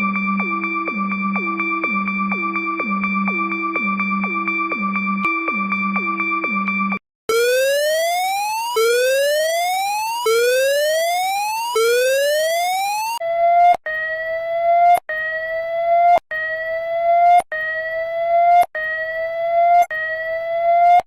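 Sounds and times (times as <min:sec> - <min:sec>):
electronic alert siren: 0:07.3 - 0:21.0.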